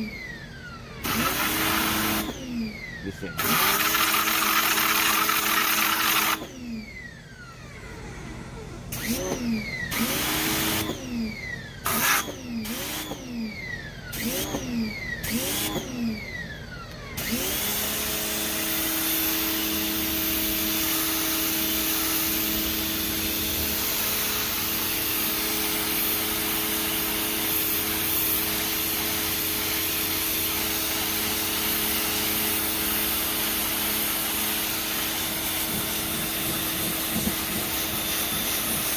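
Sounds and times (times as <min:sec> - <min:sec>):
pressure washer motor whining: 0:00.0 - 0:38.9
water spray hissing: 0:03.5 - 0:06.4.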